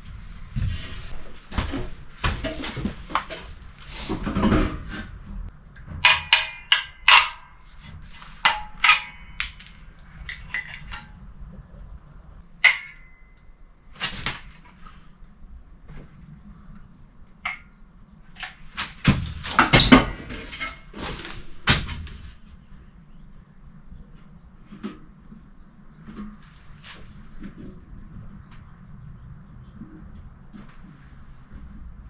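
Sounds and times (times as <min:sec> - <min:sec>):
metal fittings clinking and knocking: 0:06.0 - 0:07.6
rustling: 0:18.4 - 0:22.6.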